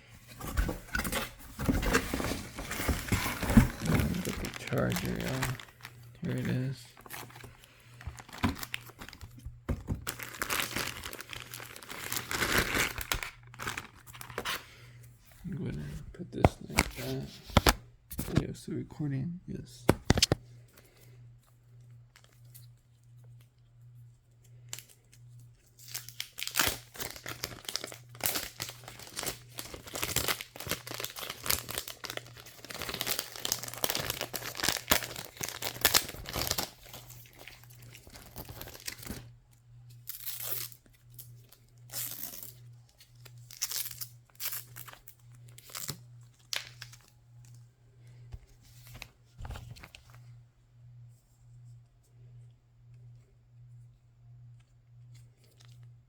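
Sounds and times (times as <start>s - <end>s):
packaging tearing and crinkling: 0.5s - 9.4s, 10.0s - 14.6s, 25.8s - 39.2s, 40.0s - 47.1s.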